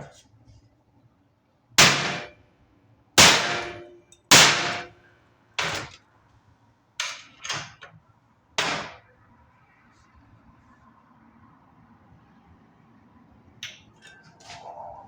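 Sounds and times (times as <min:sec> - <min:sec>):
hammer striking metal: 0:01.8 - 0:02.4, 0:03.2 - 0:05.0, 0:08.6 - 0:09.0.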